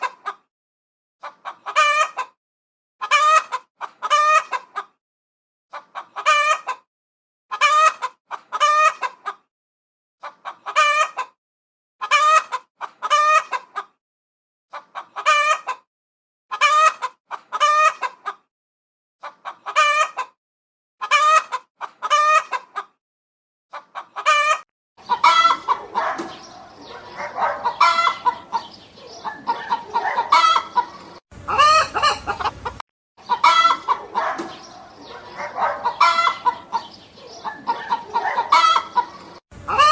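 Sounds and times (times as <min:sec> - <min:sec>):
flock of chickens calling: 0:00.0 - 0:00.4, 0:01.2 - 0:02.4, 0:03.0 - 0:05.0, 0:05.7 - 0:06.9, 0:07.5 - 0:09.4, 0:10.2 - 0:11.4, 0:12.0 - 0:13.9, 0:14.7 - 0:15.8, 0:16.5 - 0:18.4, 0:19.2 - 0:20.4, 0:21.0 - 0:22.9, 0:23.7 - 0:39.9
chickens clucking: 0:00.0 - 0:00.5, 0:01.2 - 0:02.4, 0:03.0 - 0:05.0, 0:05.7 - 0:06.9, 0:07.5 - 0:09.5, 0:10.2 - 0:11.4, 0:12.0 - 0:14.0, 0:14.7 - 0:15.9, 0:16.5 - 0:18.4, 0:19.2 - 0:20.4, 0:21.0 - 0:23.0, 0:23.7 - 0:39.9.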